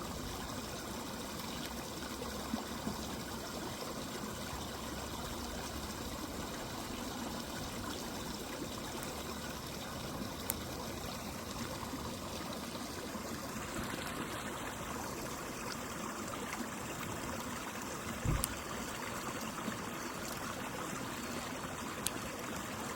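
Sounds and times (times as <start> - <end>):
river flowing: 0.0 - 22.9
campfire crackling and popping: 7.6 - 12.7, 18.2 - 18.6.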